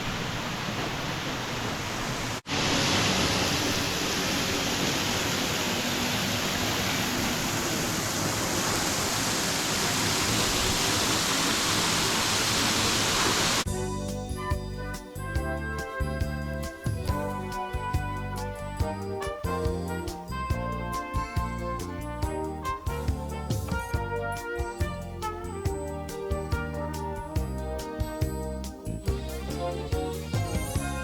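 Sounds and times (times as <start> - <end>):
waterfall roaring: 0.0 - 13.6
music: 13.7 - 31.0.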